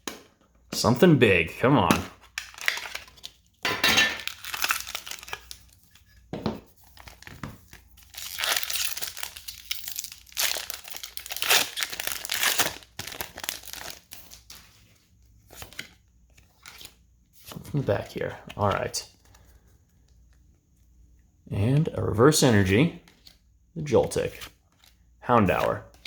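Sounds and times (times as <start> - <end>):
foil wrapper crinkling and tearing: 2.2 - 3.6, 4.2 - 6.1, 6.8 - 14.7.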